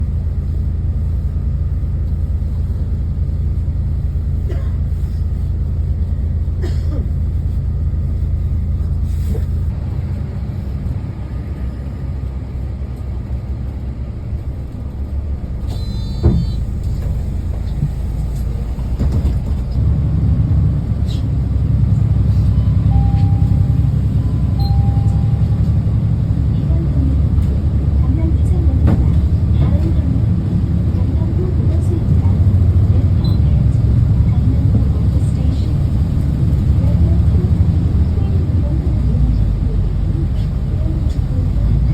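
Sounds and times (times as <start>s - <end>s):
bus engine and tyres rumbling: 0.0s - 41.9s
short tones: 22.4s - 25.8s.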